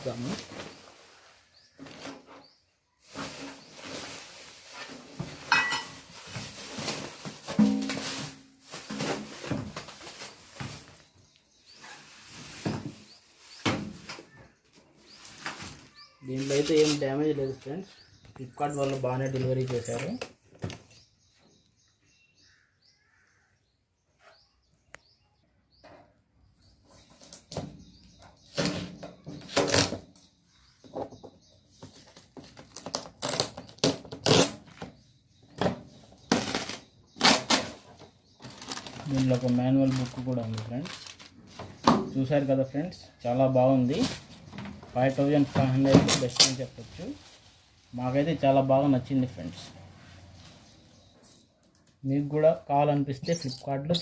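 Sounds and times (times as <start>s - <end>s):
packaging rustling and scraping: 3.0s - 14.4s, 15.0s - 17.0s, 36.2s - 41.9s, 43.9s - 48.2s.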